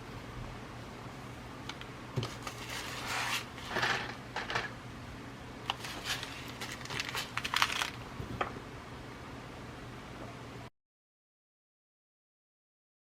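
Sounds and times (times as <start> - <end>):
steady low hum: 0.0 - 10.7
bead packets rustling: 5.7 - 8.0.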